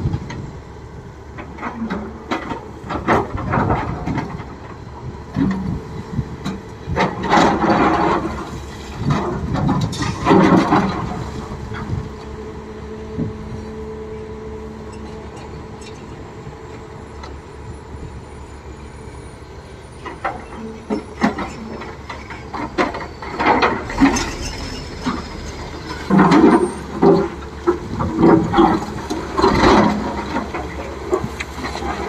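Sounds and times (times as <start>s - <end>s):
excavator engine and hydraulics: 0.0s - 32.0s
faint held whine: 23.7s - 27.6s.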